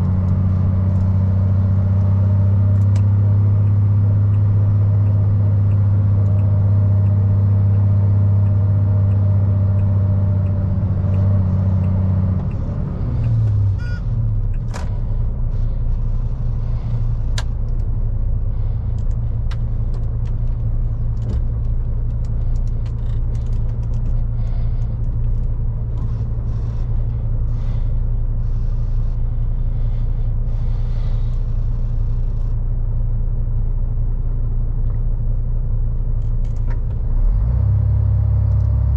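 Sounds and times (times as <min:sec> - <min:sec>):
lorry diesel engine droning: 0:00.0 - 0:38.9.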